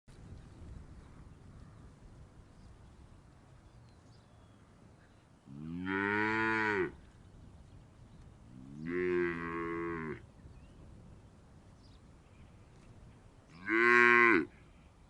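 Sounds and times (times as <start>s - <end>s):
cow mooing: 5.5s - 7.0s, 8.7s - 10.2s, 13.6s - 14.5s.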